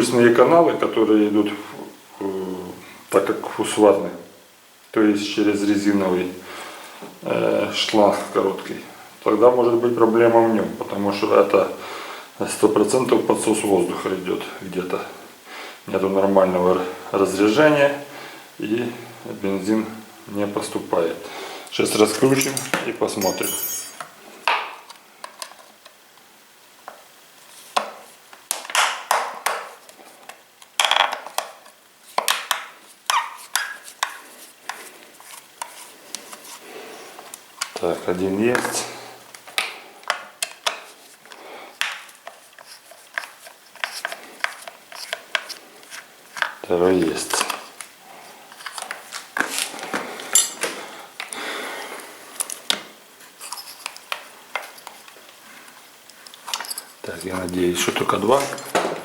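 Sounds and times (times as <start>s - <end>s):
hand tools clicking and scraping: 22.2s - 24.1s, 38.6s - 46.6s, 48.5s - 51.4s, 53.3s - 55.2s, 56.1s - 58.8s
metal tools clinking: 22.2s - 24.1s, 50.3s - 50.8s, 56.4s - 57.4s.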